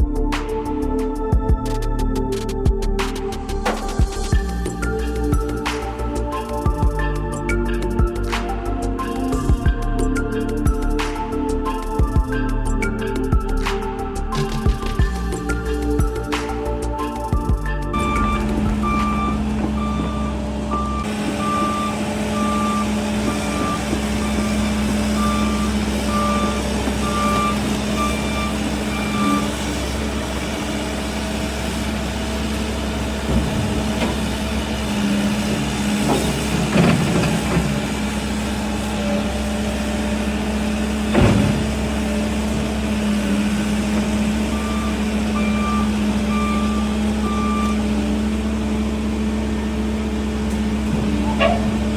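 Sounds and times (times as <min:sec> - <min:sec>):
diesel engine running: 0:00.0 - 0:51.9
travel alarm beeping: 0:17.7 - 0:30.2, 0:44.4 - 0:48.7.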